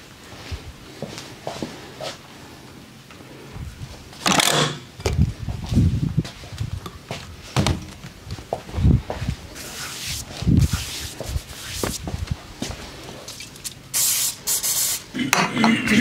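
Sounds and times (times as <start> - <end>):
hands rubbing skin: 9.6 - 12.4
hands slapping and patting body: 10.0 - 12.1
short hiss: 13.9 - 15.0.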